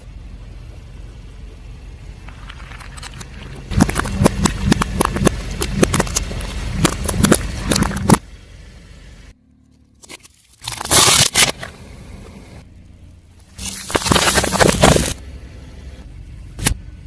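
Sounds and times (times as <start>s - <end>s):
low engine rumble: 0.0s - 17.0s
tyre crushing brittle objects: 2.3s - 8.2s, 10.0s - 11.7s, 13.6s - 15.2s.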